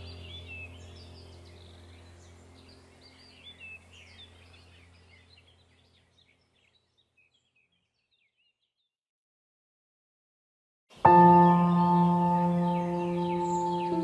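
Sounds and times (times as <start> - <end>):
low steady hum: 0.0 - 7.4, 11.0 - 14.0
small birds chirping: 0.0 - 9.0, 10.9 - 14.0.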